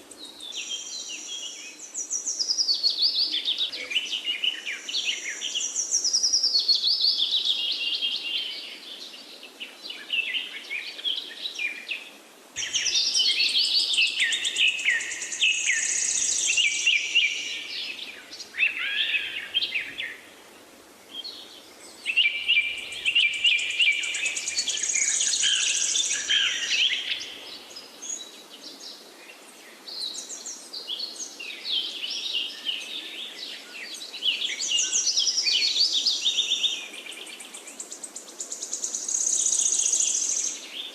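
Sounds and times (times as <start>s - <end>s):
birds chirping and trilling: 0.0s - 40.9s.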